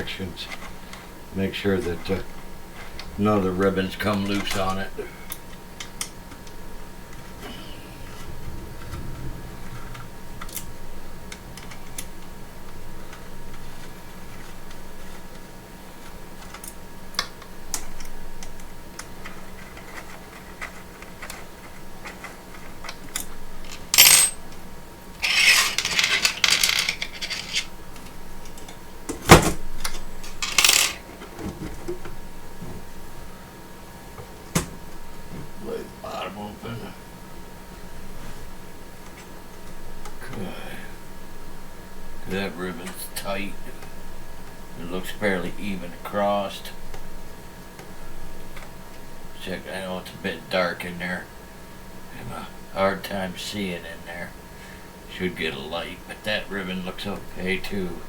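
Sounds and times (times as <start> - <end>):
metallic clinks and rattles: 25.2 - 27.7.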